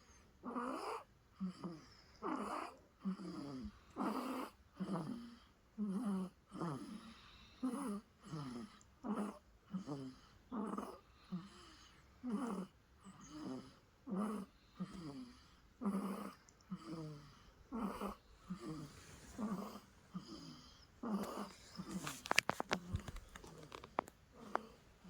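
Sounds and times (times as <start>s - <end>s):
baby snoring: 12.2s - 24.8s.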